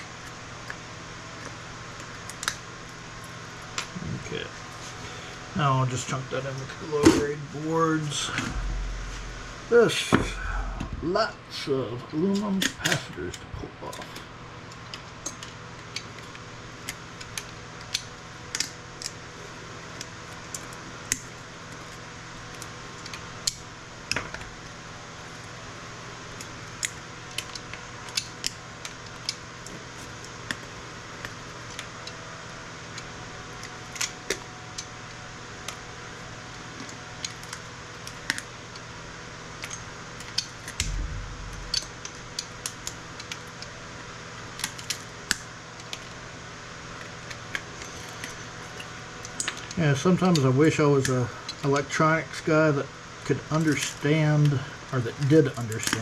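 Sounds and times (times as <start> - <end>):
steady hum: 0.0 - 56.0
short low thud: 8.4 - 9.6, 40.8 - 41.9
capacitors snapping off: 39.6 - 43.7, 55.7 - 56.0.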